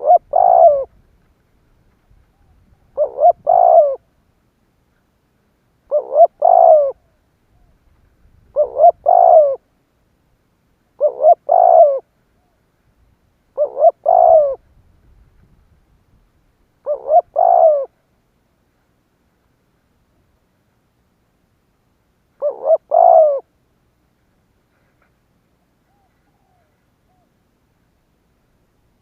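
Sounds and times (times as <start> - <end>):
dove cooing: 0.0 - 1.0, 2.2 - 4.1, 5.9 - 7.8, 8.5 - 9.7, 11.0 - 12.6, 13.5 - 14.7, 16.8 - 18.0, 22.4 - 23.5, 25.8 - 27.4.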